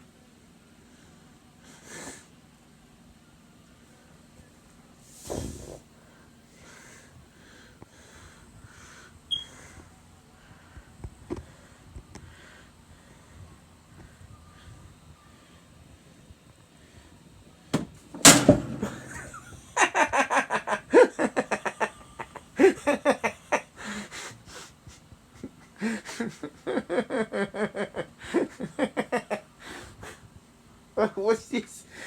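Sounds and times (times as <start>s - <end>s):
sharp thump: 17.8s - 19.5s.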